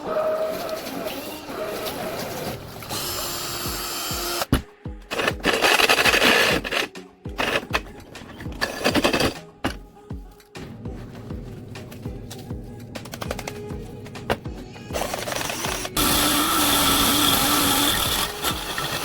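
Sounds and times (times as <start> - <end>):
background music: 0.0 - 19.0
cordless drill running: 2.9 - 4.5, 5.1 - 7.7, 14.9 - 19.0.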